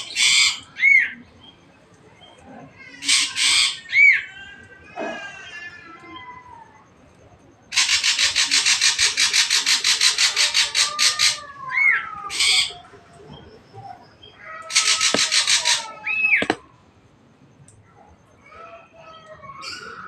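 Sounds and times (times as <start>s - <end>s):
bird rattling chatter: 14.7s - 16.6s.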